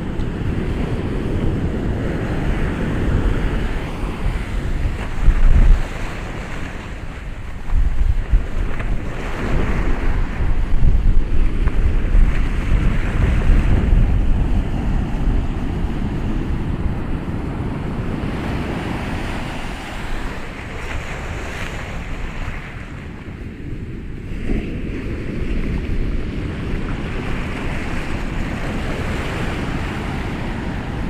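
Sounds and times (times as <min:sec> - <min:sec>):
ocean waves breaking: 0:00.0 - 0:31.0.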